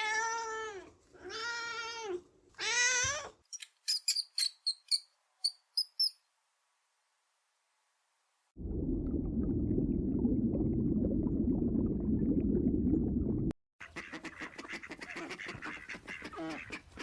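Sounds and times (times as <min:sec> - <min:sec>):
loud dense low noise: 0:08.6 - 0:13.5
ducks quacking: 0:13.8 - 0:17.0.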